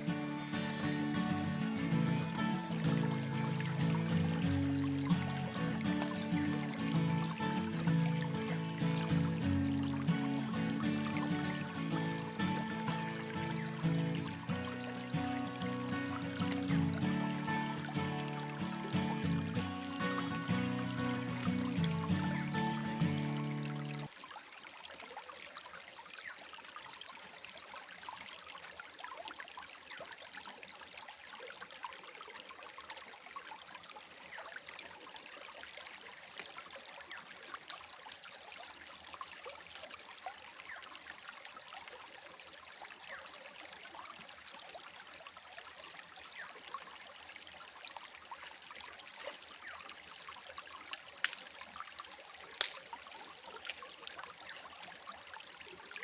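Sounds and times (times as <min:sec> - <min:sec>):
stream flowing over stones: 0:00.0 - 0:56.0.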